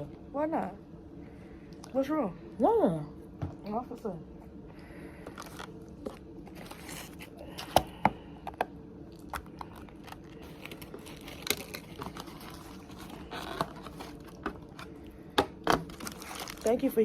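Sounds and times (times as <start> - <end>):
food packaging rustling: 5.2 - 7.8, 9.2 - 17.0.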